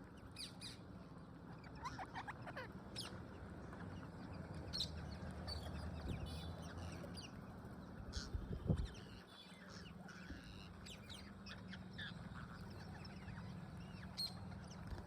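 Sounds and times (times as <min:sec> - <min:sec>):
parrots squawking and chirping: 0:01.5 - 0:03.2, 0:08.1 - 0:14.8.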